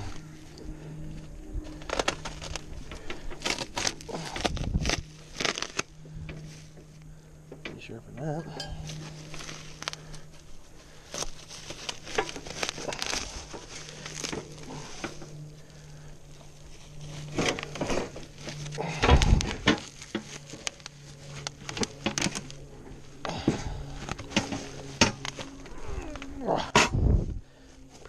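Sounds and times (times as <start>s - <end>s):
faint low hum: 0.0s - 28.0s
steel parts clinking and knocking: 7.5s - 9.2s.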